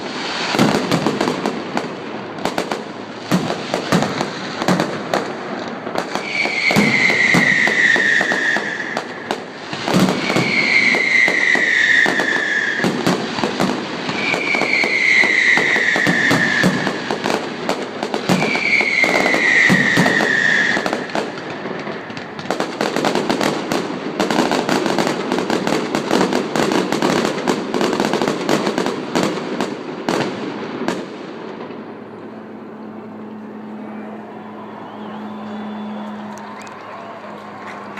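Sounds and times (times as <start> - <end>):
fireworks crackling and popping: 0.0 - 32.6
falling firework whistles: 6.0 - 27.2, 33.6 - 37.3.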